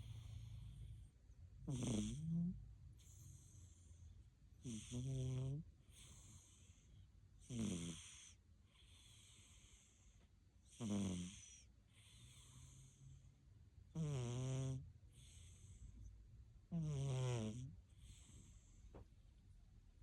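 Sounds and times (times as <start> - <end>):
cat snoring: 0.0 - 4.0, 4.6 - 13.3, 13.9 - 16.0, 16.7 - 18.9
soft hissing breaths: 0.0 - 10.5, 15.0 - 16.2, 17.6 - 19.3.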